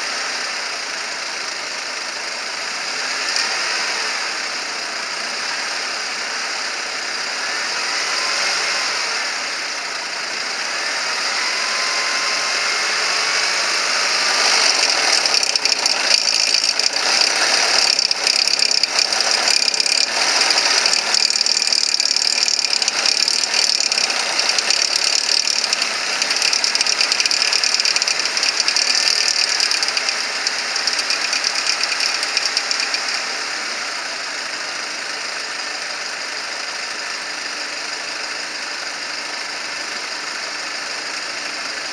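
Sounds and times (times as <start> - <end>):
car engine idling: 0.1 - 7.6, 12.8 - 41.9
fast mechanical ticking rattle: 14.0 - 33.6.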